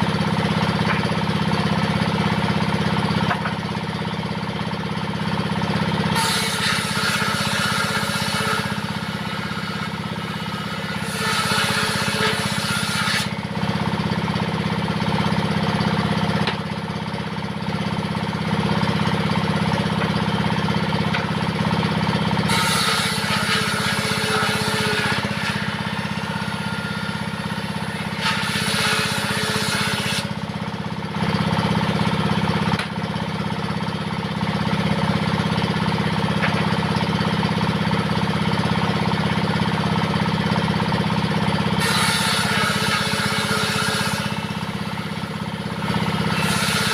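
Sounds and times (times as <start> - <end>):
diesel engine running: 0.0 - 6.2, 13.3 - 22.5, 30.2 - 41.8, 44.2 - 46.4
saw blade ripping wood: 6.1 - 13.4, 22.4 - 30.4, 41.8 - 46.9.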